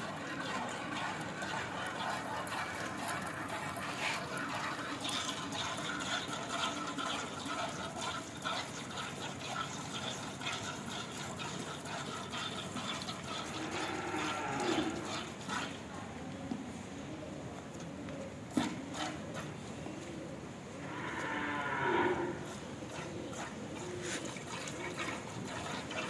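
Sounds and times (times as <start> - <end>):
cow mooing: 13.5 - 15.1, 20.8 - 22.5.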